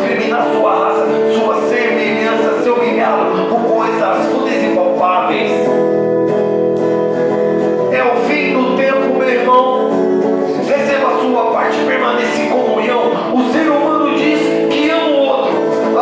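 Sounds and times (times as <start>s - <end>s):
guitar over backing music: 0.0s - 16.0s.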